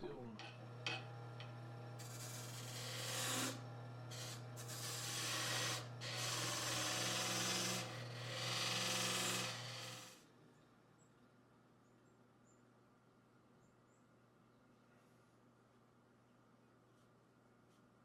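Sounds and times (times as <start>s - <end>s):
wood lathe humming: 0.6s - 10.2s.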